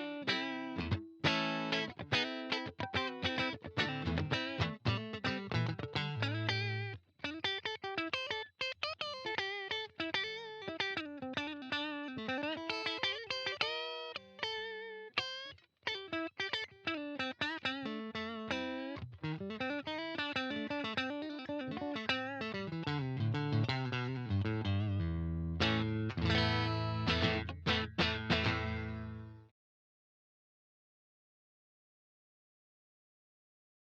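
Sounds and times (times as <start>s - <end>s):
electric guitar lead lines: 0.0s - 29.4s
heavy electric guitar chords: 21.6s - 29.3s.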